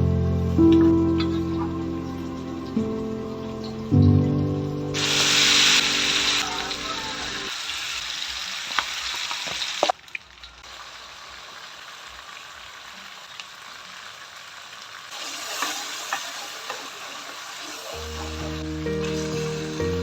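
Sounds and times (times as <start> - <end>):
background music: 0.0 - 7.5, 18.0 - 20.0
food sizzling in a pan: 0.4 - 20.0.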